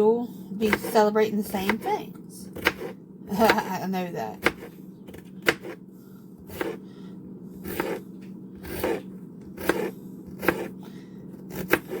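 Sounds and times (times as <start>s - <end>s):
knife chopping peppers: 0.6s - 3.7s, 4.4s - 5.8s, 6.4s - 6.8s, 7.6s - 10.8s, 11.4s - 12.0s.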